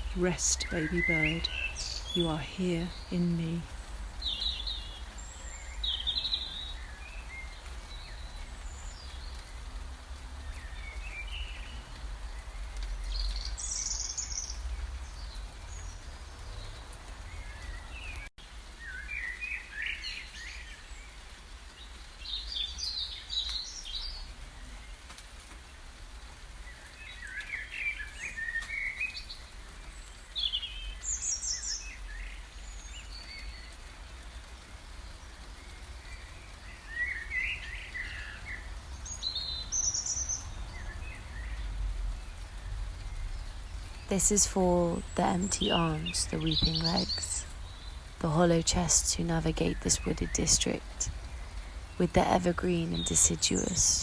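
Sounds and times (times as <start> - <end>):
birds chirping: 0.0 - 9.4, 43.3 - 54.0.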